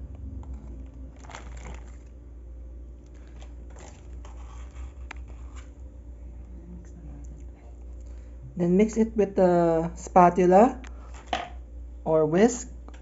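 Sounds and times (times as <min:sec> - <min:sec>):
low steady hum: 0:00.0 - 0:13.0
crinkling and scraping in bowl: 0:00.1 - 0:02.2, 0:03.0 - 0:05.9.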